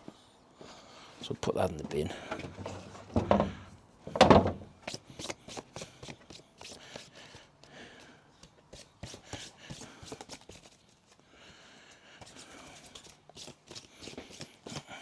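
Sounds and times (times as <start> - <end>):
handling clicks taps and rustles: 1.4 - 7.1.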